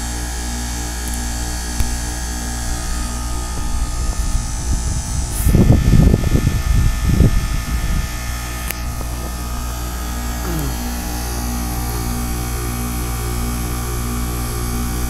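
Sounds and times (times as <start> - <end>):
heat pump humming: 0.0 - 15.0
low rumbling gusts: 2.5 - 9.7.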